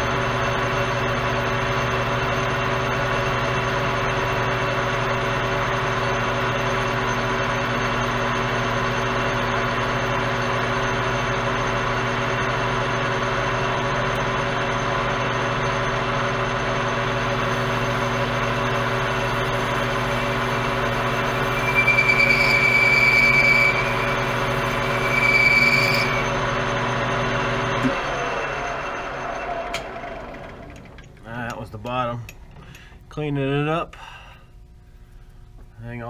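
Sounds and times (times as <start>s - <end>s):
metal lathe humming: 0.0s - 33.0s
high-pitched cutting squeal: 20.9s - 26.5s.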